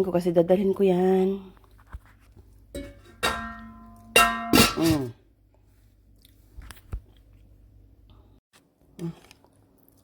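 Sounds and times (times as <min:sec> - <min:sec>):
metal clanging: 0:02.7 - 0:05.1.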